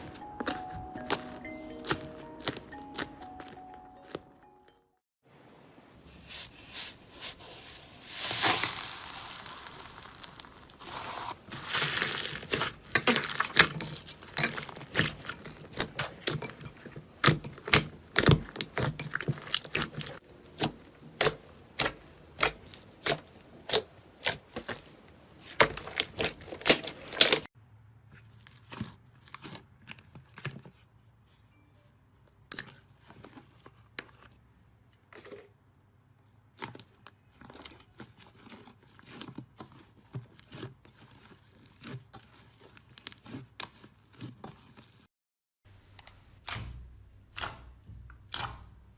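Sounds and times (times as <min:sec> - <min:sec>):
slime crackling and popping: 0:08.0 - 0:16.5, 0:17.2 - 0:27.5.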